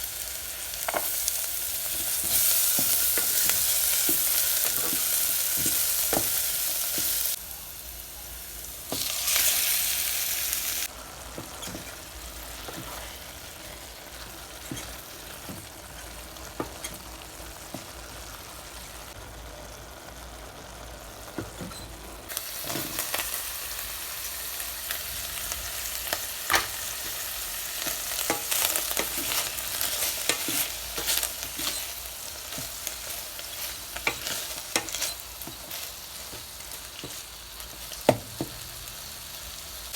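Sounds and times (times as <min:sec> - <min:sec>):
food sizzling in a pot: 0:00.0 - 0:39.9
spoon scraping a pot: 0:27.8 - 0:37.2.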